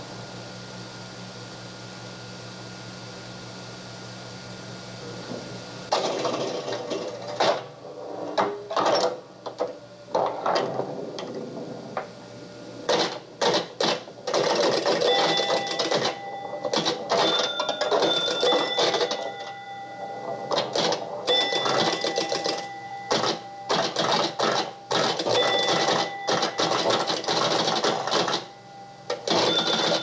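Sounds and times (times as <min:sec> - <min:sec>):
mechanical clattering and clicking: 0:12.9 - 0:19.6, 0:20.4 - 0:28.5
short ringing tones: 0:14.9 - 0:27.1, 0:27.9 - 0:30.0.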